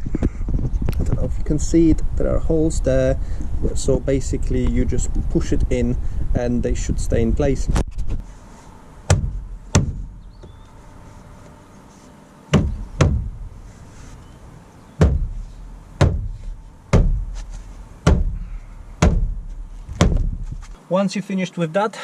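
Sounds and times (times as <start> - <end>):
sharp knocks on door panel: 9.1 - 10.6, 12.5 - 13.4, 15.0 - 15.4, 16.0 - 17.3, 18.0 - 18.4, 19.0 - 20.4.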